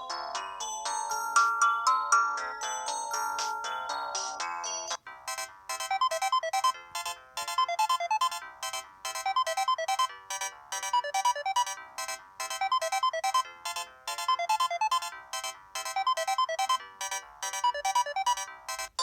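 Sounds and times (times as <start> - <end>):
synthesized phone ringtone: 5.2 - 19.0.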